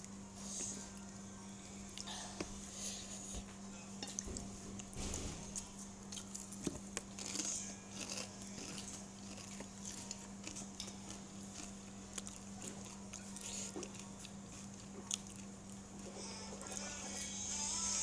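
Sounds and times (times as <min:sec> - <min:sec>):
steady low hum: 0:00.0 - 0:18.0
person chewing and crunching food: 0:04.1 - 0:18.0.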